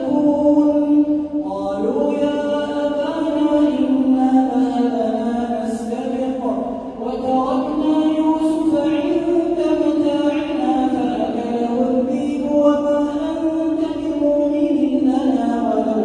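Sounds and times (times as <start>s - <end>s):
man chanting melodically: 0.0s - 16.0s.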